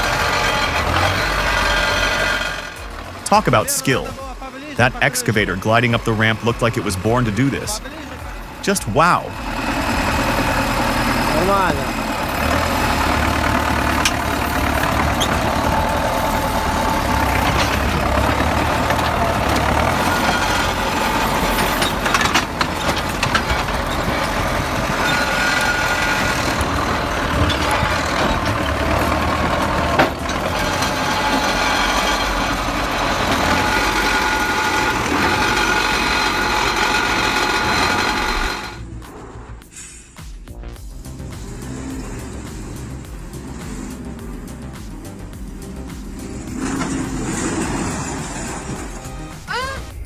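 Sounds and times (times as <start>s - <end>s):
sharp engine knocks: 0.0s - 38.8s
heavy diesel engine running: 0.0s - 50.0s.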